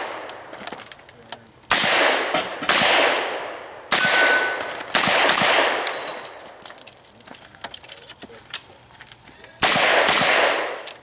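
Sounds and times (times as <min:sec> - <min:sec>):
revolver shots echoing: 0:01.7 - 0:06.4.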